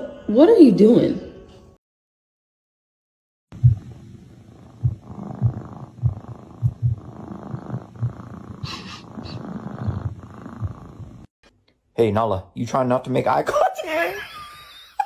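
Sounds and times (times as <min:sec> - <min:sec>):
cat purring: 0:03.5 - 0:11.3.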